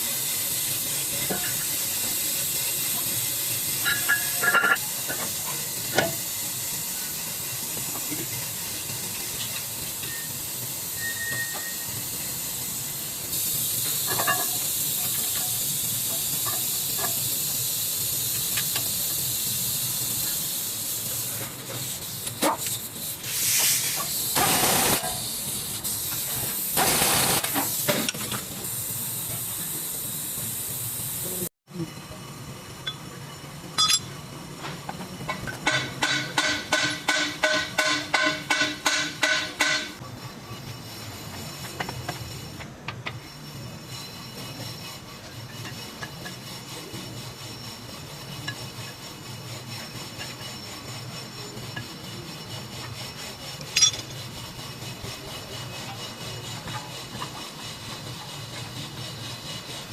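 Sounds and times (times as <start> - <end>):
steady hiss of air or spray: 0.0 - 11.0, 11.6 - 31.5.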